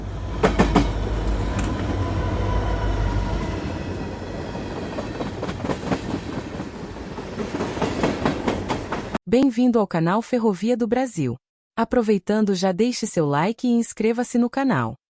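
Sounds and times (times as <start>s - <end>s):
train rumbling on rails: 0.0s - 9.2s
wheels clicking over rail joints: 0.4s - 2.1s.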